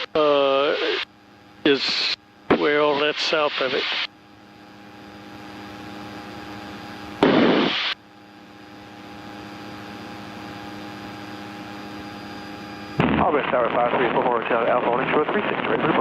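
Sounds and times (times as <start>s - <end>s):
radio static burst: 0.0s - 1.0s, 1.7s - 4.1s, 7.2s - 8.0s, 13.0s - 16.0s
light aircraft engine drone: 0.0s - 16.0s.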